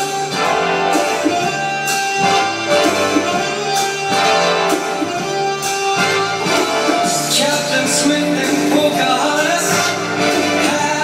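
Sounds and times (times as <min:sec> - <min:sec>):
instrumental guitar music: 0:00.0 - 0:11.0
person singing: 0:06.4 - 0:11.0.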